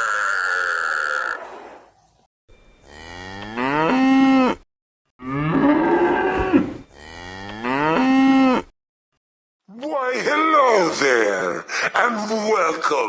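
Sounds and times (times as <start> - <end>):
cow mooing: 2.8 - 4.6, 5.2 - 8.7.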